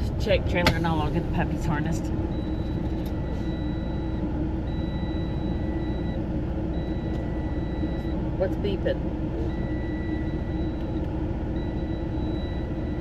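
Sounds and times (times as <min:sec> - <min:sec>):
truck engine idling: 0:00.0 - 0:13.0
dashboard warning beeps: 0:00.5 - 0:13.0.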